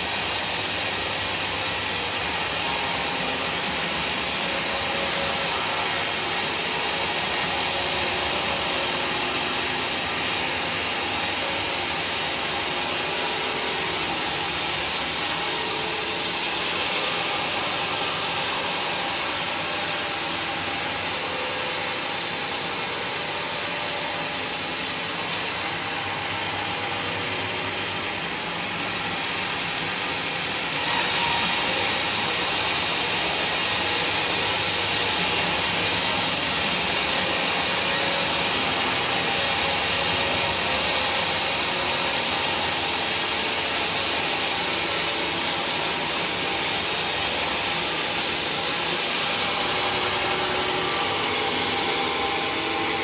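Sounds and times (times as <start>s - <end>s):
machine whirring with hiss: 0.0s - 53.0s.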